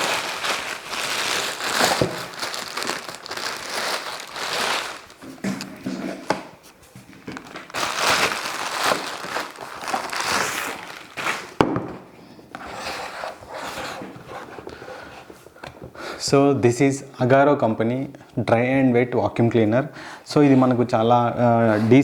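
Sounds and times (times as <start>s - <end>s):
plastic packaging crinkling: 0.0s - 11.7s.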